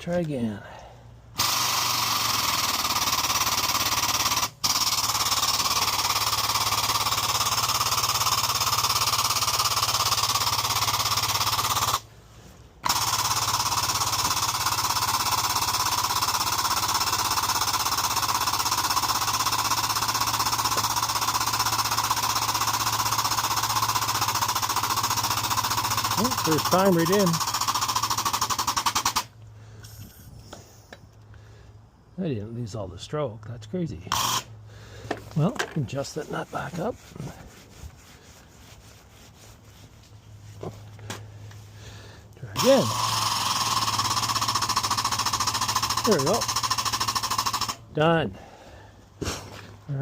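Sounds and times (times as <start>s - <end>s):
hydraulic pump rattling: 1.3s - 12.1s, 12.8s - 30.7s, 42.4s - 48.5s.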